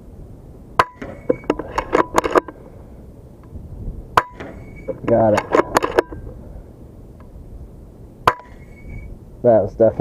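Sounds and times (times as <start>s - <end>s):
sharp metallic clicks with ringing: 4.2s - 6.2s.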